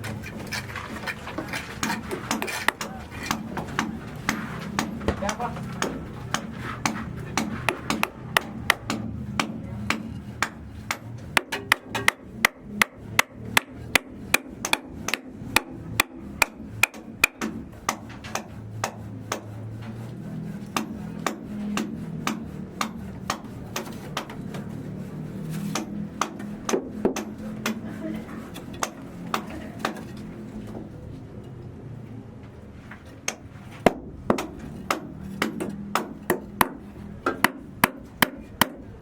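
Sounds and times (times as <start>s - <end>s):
hammer blows: 1.8s - 24.6s.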